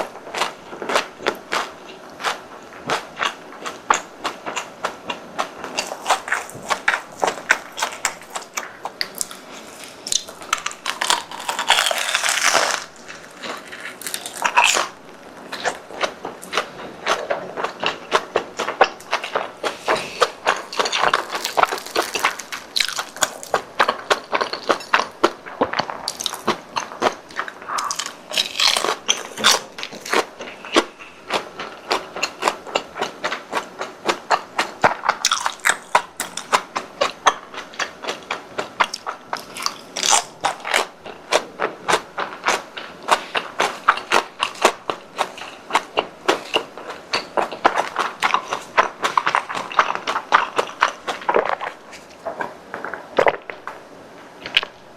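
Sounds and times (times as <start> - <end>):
chewing crispy food: 0.0 - 54.9.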